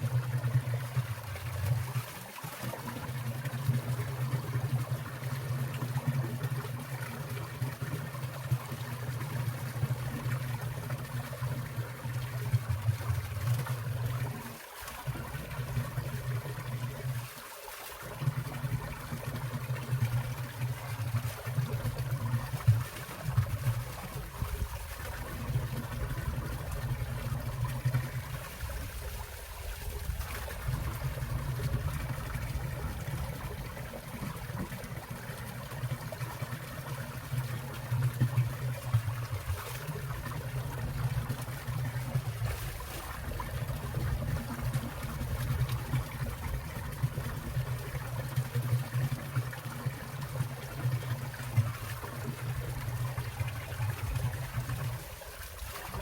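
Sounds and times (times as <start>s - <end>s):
water drips and splashes: 0.0s - 56.0s
stream water rushing: 9.0s - 49.0s, 51.2s - 56.0s.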